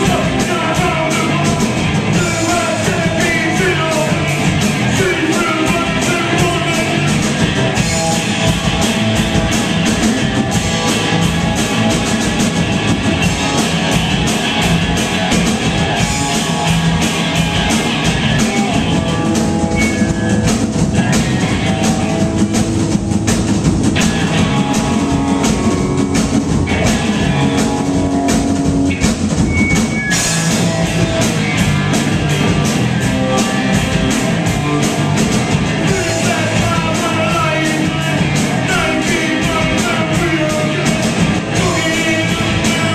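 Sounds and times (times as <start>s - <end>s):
person singing: 0.0s - 7.4s, 35.8s - 42.9s
drum kit: 0.0s - 42.9s
electric guitar: 0.0s - 42.9s.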